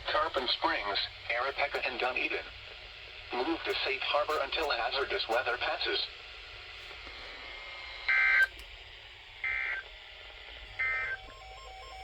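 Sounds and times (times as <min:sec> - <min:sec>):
faint radio hiss: 0:00.0 - 0:08.0.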